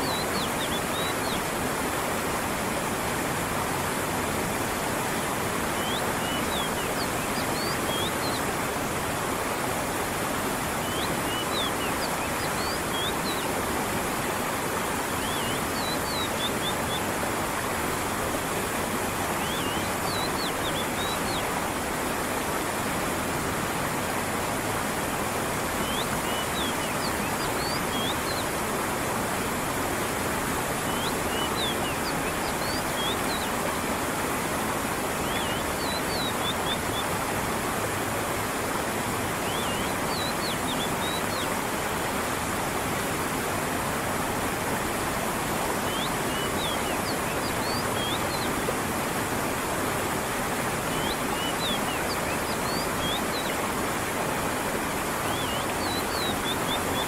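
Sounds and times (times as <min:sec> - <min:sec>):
brook water running: 0:00.0 - 0:57.0.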